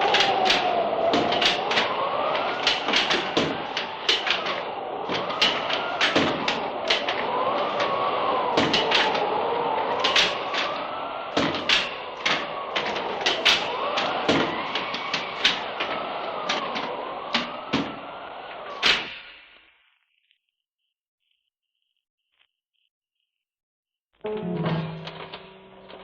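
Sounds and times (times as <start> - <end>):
sharp clicks and knocks: 0.0 - 9.2.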